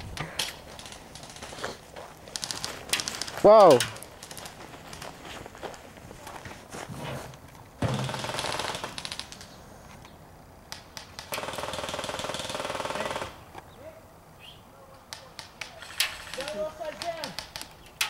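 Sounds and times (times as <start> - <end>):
airsoft gun firing full-auto: 7.8 - 9.3, 11.2 - 13.4.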